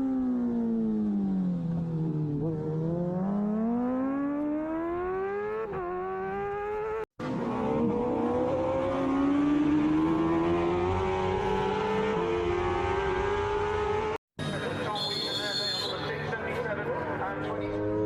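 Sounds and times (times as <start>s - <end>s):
racing motorcycle engine accelerating: 0.0s - 14.2s, 17.2s - 18.0s.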